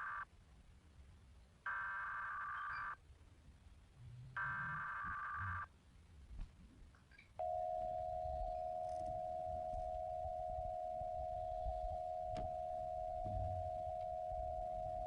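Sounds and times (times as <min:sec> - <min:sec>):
long steady attention tone: 0:00.0 - 0:00.3, 0:01.7 - 0:03.0, 0:04.3 - 0:05.7, 0:07.4 - 0:15.0.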